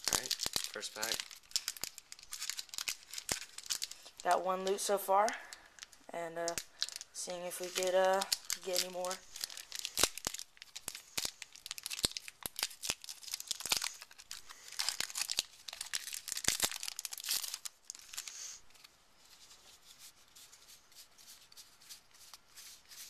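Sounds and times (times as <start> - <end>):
foil wrapper crinkling and tearing: 0.0 - 18.9.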